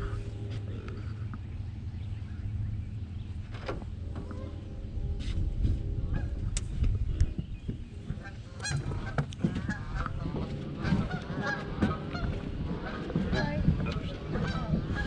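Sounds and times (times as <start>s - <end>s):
steady low rumble: 0.0s - 15.0s
geese honking: 4.0s - 6.6s, 7.2s - 15.0s.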